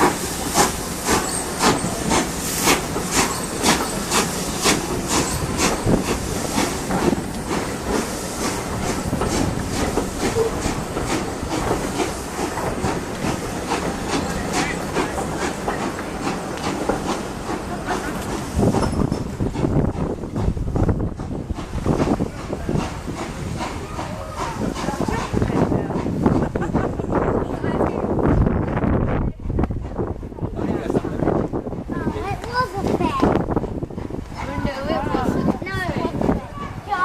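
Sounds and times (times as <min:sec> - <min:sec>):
steam hissing: 0:00.0 - 0:27.4
steam locomotive exhaust beats: 0:00.0 - 0:37.0.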